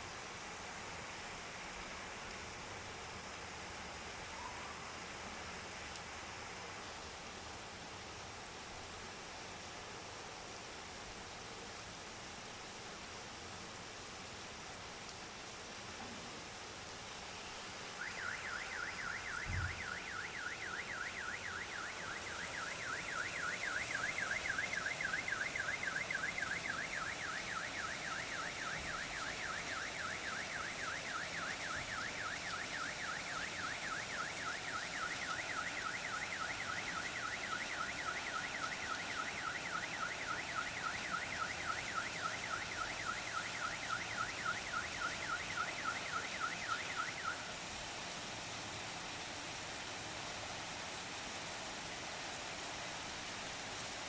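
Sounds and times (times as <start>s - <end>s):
rain hissing: 0.0s - 54.0s
car alarm warbling: 18.0s - 47.4s.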